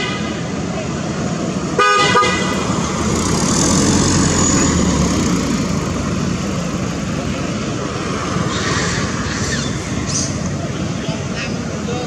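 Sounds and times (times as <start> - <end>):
vehicle horn toot: 1.8 - 2.6
motor vehicle passing by: 2.5 - 10.5.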